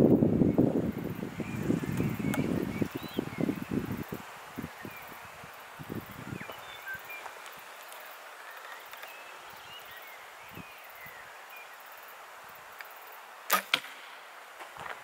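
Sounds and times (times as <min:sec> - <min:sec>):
arrow striking target: 0:13.5 - 0:14.2
bowstring snap: 0:13.5 - 0:14.2.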